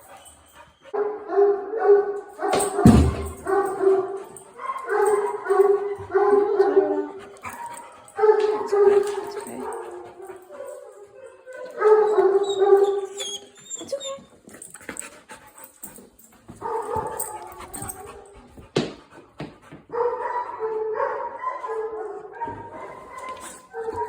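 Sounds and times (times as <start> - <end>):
dog whining: 11.2 - 14.6.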